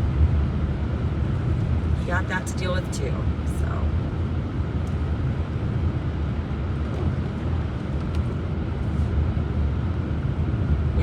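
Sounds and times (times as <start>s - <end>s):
car engine and tyre noise: 0.0s - 11.0s.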